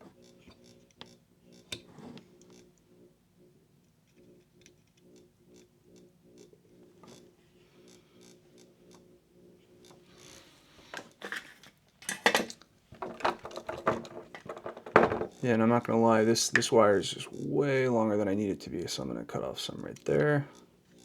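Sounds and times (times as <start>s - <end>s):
faint pulsing hum: 0.0s - 11.0s, 15.3s - 21.0s.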